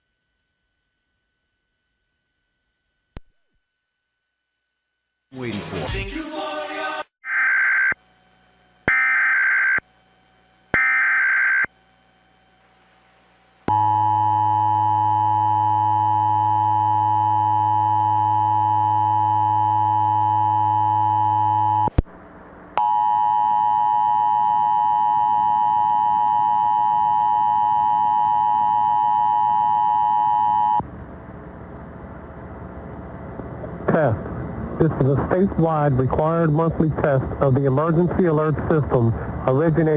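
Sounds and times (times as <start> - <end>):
click: 3.1 - 3.3.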